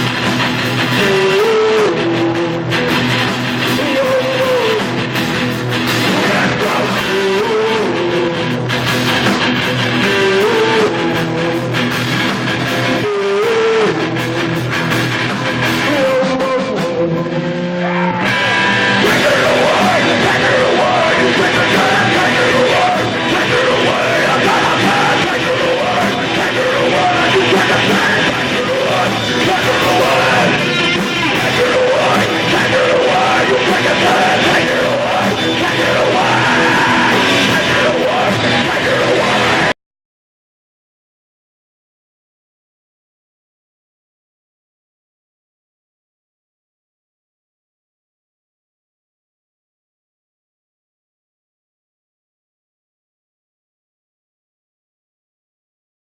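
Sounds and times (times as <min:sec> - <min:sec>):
live rock band playing: 0:00.0 - 0:39.7
singing vocals: 0:00.8 - 0:02.8, 0:03.6 - 0:05.2, 0:05.8 - 0:08.6, 0:09.8 - 0:11.8, 0:12.9 - 0:14.7, 0:15.8 - 0:39.8.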